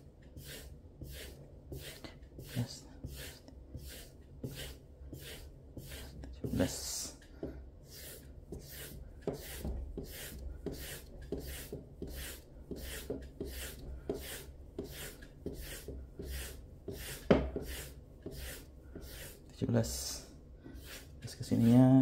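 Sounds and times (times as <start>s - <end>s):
knife blade stropping strokes: 7.9s - 19.5s, 20.7s - 21.8s.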